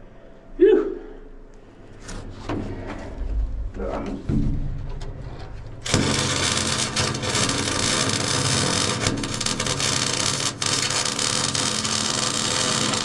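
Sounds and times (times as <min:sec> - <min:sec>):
low rumble: 0:01.2 - 0:07.4
welding arc crackling hiss: 0:05.8 - 0:13.0.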